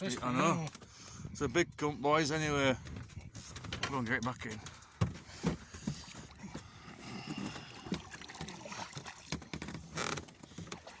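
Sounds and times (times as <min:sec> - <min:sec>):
water splashing and sloshing: 0:02.7 - 0:11.0.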